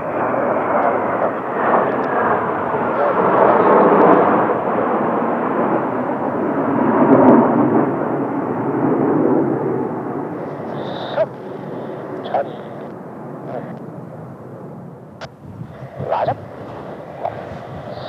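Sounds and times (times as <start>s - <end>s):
jet engines rumbling past: 0.0s - 18.0s.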